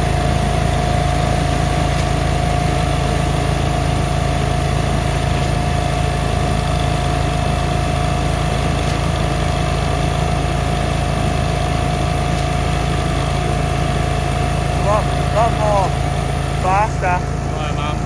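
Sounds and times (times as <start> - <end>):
engine running steadily: 0.0 - 18.0.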